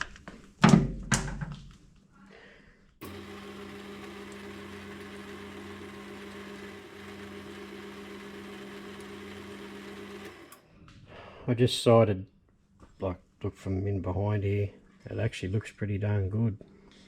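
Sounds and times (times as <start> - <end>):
metal lathe motor hum: 3.0 - 10.6.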